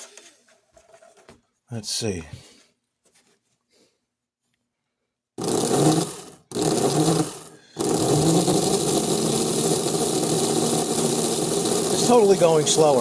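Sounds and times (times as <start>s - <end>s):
model train motors whirring: 5.4s - 13.0s.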